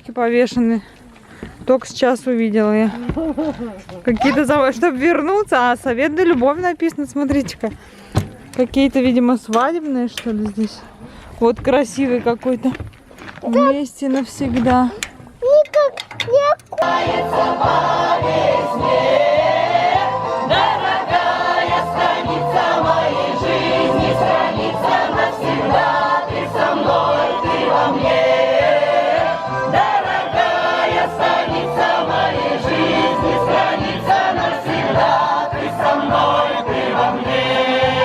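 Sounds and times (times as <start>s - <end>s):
backing music with steady beat: 16.8s - 38.0s
women singing folk song: 16.8s - 38.0s.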